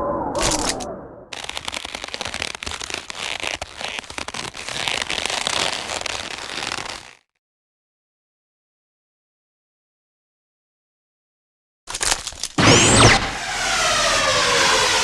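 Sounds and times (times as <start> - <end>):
rapid crackles and pops: 0.4 - 7.3.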